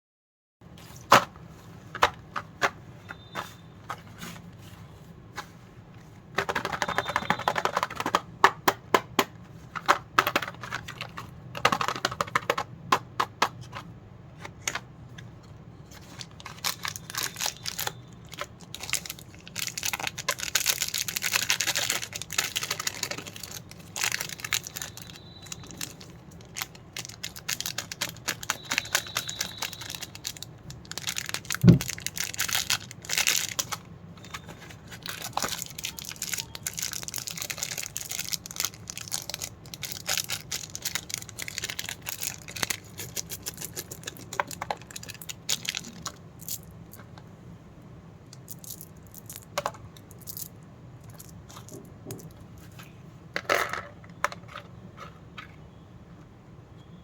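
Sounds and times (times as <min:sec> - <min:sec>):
plastic wrappers crinkling: 0:15.8 - 0:47.2, 0:48.4 - 0:52.8.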